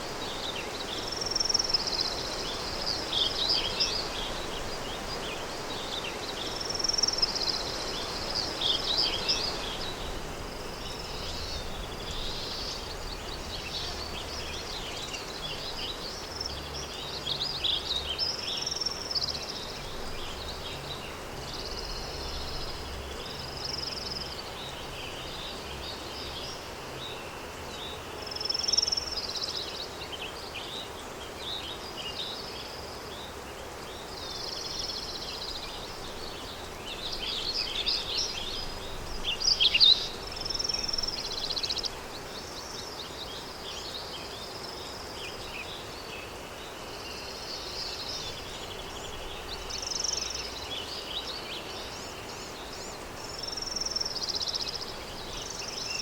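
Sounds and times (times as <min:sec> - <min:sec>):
small birds chirping and singing: 0:00.0 - 0:56.0
wind hiss: 0:00.0 - 0:56.0.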